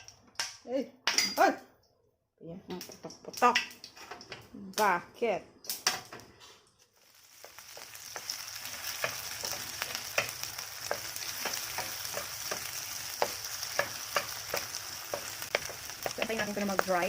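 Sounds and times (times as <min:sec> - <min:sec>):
food sizzling in a pan: 0:06.9 - 0:17.0.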